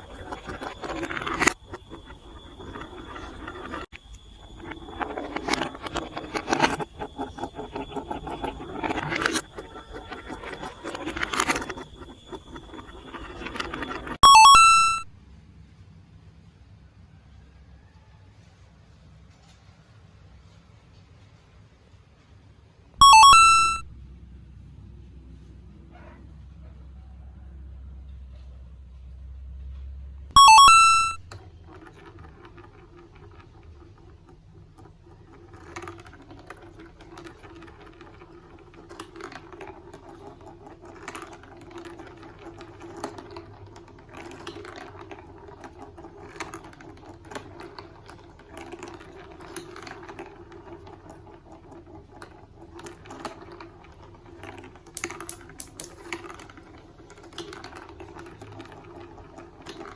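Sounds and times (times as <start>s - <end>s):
electronic chime rising in pitch: 14.2s - 15.1s, 23.0s - 23.9s, 30.4s - 31.3s
plastic pieces clicking together: 52.8s - 59.9s.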